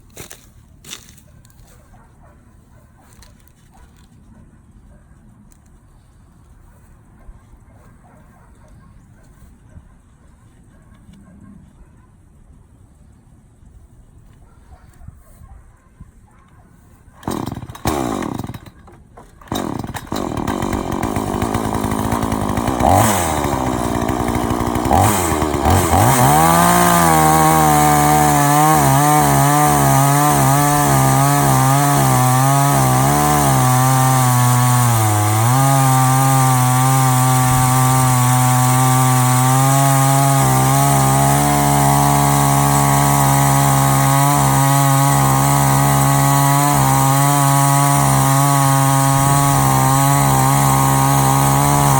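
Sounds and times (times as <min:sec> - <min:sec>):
chainsaw revving and cutting: 0:17.2 - 0:51.9.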